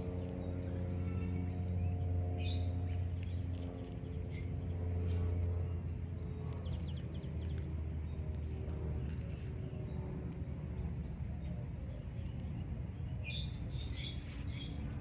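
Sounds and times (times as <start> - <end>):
birds chirping: 0.0 - 15.0
steady low hum: 0.0 - 15.0.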